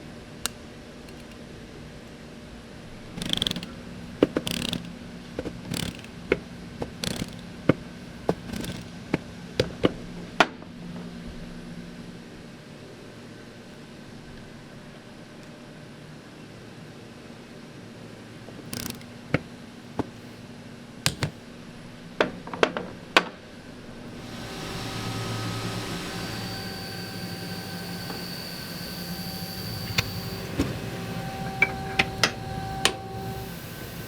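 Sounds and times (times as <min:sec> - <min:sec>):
machinery humming: 0:23.4 - 0:34.0.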